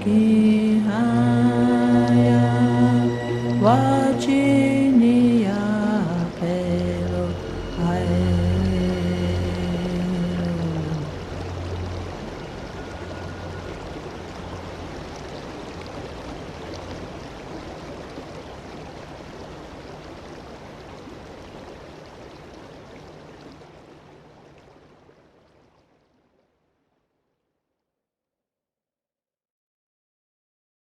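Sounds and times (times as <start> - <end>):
low hum: 0.0 - 19.2
rushing noise: 1.1 - 15.8.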